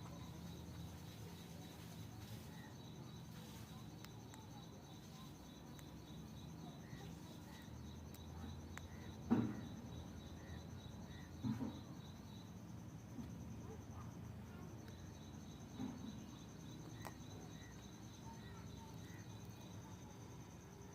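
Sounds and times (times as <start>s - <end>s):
insects trilling: 0.0s - 20.9s.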